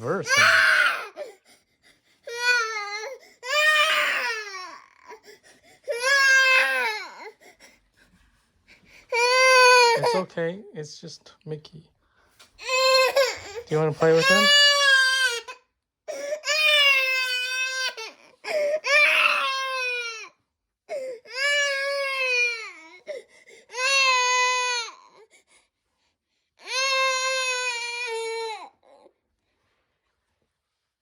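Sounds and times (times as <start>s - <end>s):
baby crying: 0.1s - 1.4s, 2.3s - 5.3s, 5.9s - 7.4s, 9.1s - 10.3s, 12.6s - 20.3s, 20.9s - 25.2s, 26.6s - 29.1s
baby breathing: 5.2s - 5.9s, 7.3s - 9.2s.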